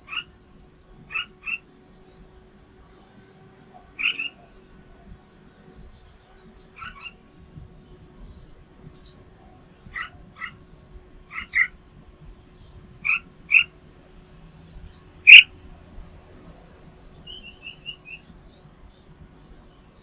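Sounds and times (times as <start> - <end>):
small birds calling: 3.9 - 4.6, 5.2 - 7.3, 17.2 - 19.1.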